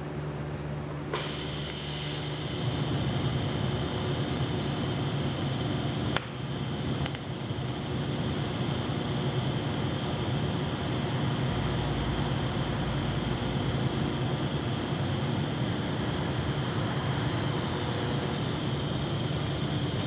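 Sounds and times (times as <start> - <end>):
welder arcing crackle and hiss: 1.2 - 10.8.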